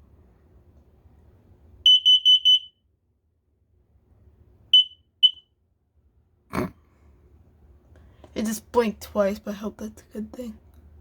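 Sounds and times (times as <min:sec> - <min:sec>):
shrill alarm beeps: 0:01.8 - 0:02.8, 0:04.7 - 0:05.5.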